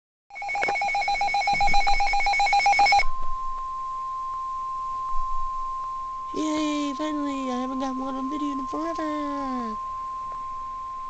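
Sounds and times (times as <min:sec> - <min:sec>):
rapidly pulsing beep: 0:00.3 - 0:03.1, 0:06.3 - 0:10.8
steady warning tone: 0:00.3 - 0:11.0.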